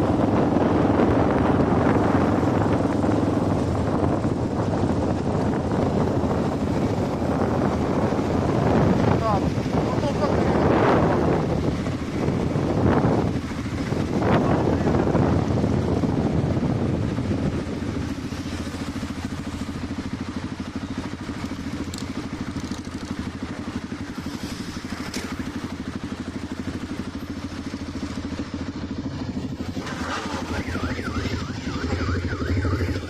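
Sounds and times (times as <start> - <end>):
motorcycle engines running: 0.0 - 33.0
rapidly warbling tone: 29.7 - 33.0.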